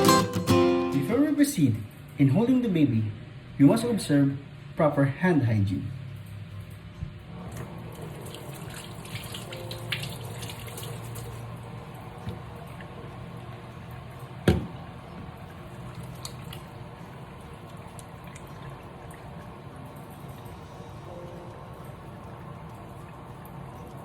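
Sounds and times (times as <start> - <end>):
tap water running into sink: 7.4 - 20.6.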